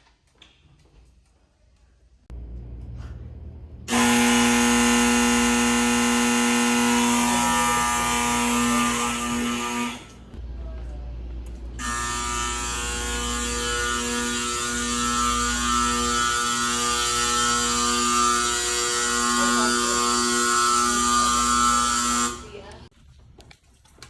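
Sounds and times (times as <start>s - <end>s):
fire alarm horn buzzing: 3.9s - 10.4s, 11.8s - 22.9s.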